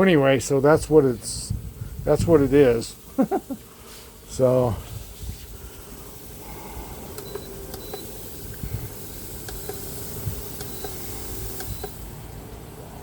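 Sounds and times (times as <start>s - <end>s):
small fan motor humming: 0.0s - 13.0s
short high beeps: 7.2s - 8.2s, 10.5s - 12.0s.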